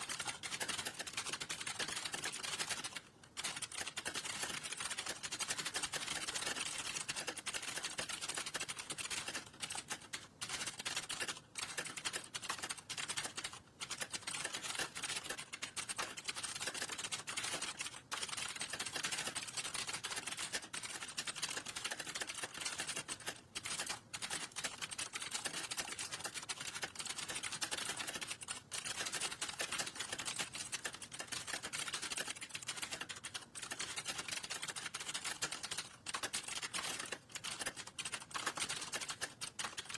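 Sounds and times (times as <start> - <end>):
computer keyboard typing: 0.0 - 39.9.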